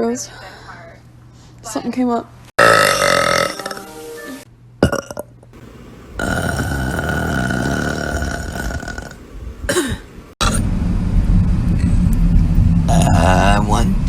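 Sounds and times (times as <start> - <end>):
burp with falling pitch: 2.6 - 3.9, 4.8 - 10.6
steady noise: 5.6 - 11.1.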